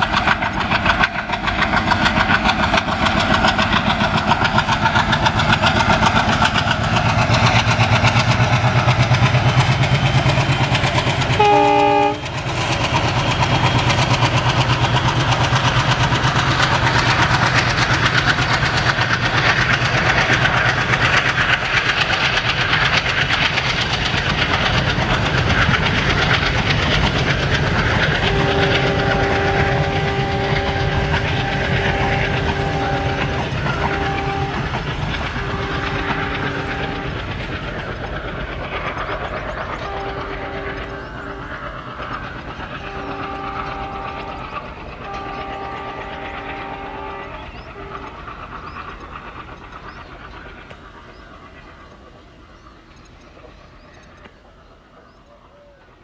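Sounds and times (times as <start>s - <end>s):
diesel locomotive chugging: 0.0s - 56.0s
train coaches clickety-clack: 0.0s - 56.0s
train horn: 11.3s - 12.5s, 27.9s - 37.5s, 39.8s - 48.5s.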